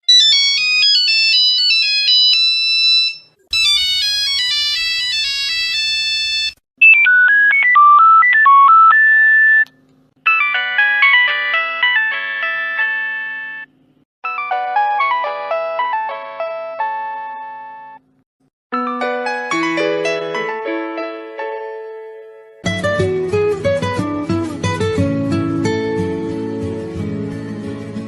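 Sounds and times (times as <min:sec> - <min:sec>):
phone ringtone melodies: 0:00.1 - 0:09.6, 0:10.2 - 0:18.0, 0:18.8 - 0:21.3.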